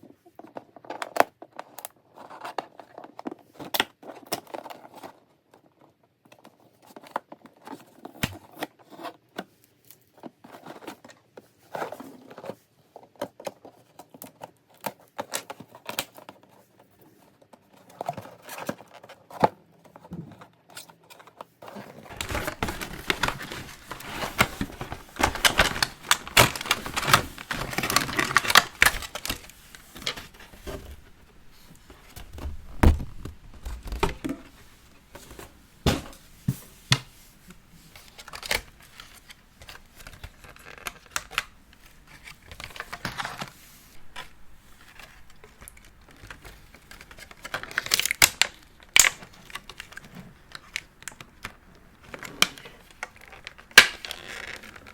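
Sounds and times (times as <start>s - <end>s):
plastic packaging crinkling: 21.8s - 54.9s.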